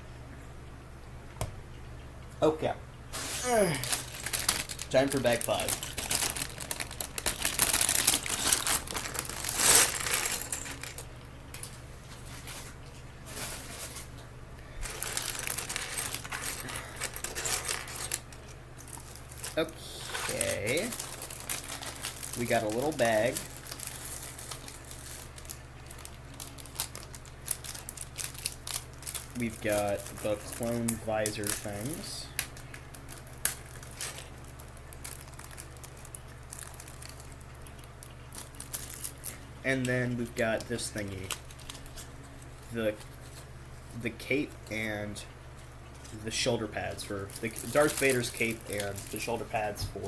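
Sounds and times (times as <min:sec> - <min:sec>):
steady low hum: 0:00.0 - 0:50.0
plastic pieces clattering: 0:03.2 - 0:11.8, 0:14.8 - 0:37.4, 0:47.2 - 0:49.6
plastic bag crinkling: 0:03.2 - 0:44.9, 0:45.6 - 0:50.0.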